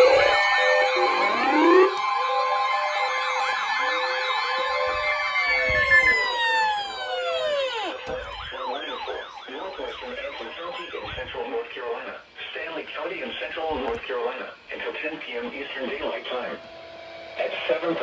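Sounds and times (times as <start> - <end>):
sirens wailing: 0.0 - 11.5
warbling sirens: 0.0 - 11.5.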